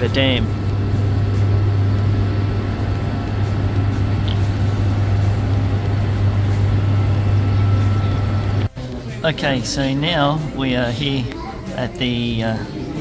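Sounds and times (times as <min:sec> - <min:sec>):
low machinery hum: 0:00.0 - 0:08.8.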